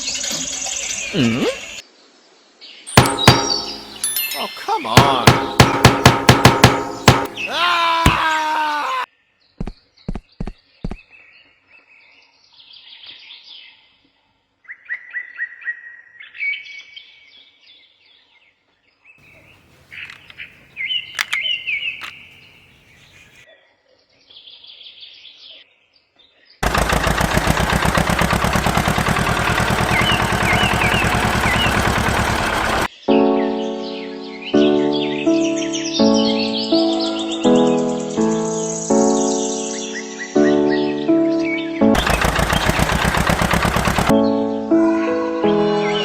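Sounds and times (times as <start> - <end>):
loud fast rattling: 3.0 - 4.2, 5.0 - 7.5, 26.6 - 32.9, 42.0 - 44.1
small birds chirping: 3.0 - 11.2, 19.2 - 23.4, 29.7 - 32.0, 34.0 - 43.0
sharp clicks: 21.1 - 22.4.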